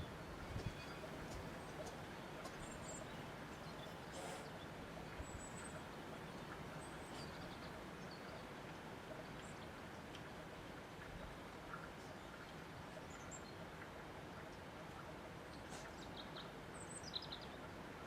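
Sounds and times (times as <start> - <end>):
faint bird chirps: 0.0 - 8.5.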